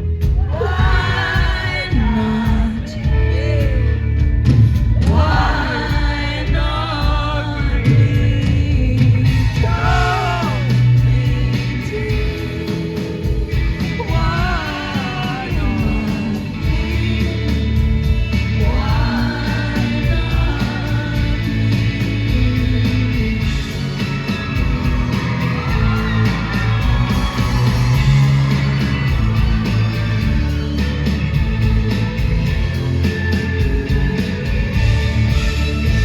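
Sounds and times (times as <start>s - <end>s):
heavy bass line: 0.0s - 36.0s
steady drum beat: 0.0s - 36.0s
woman singing: 0.4s - 4.1s, 5.0s - 17.8s, 18.6s - 23.8s.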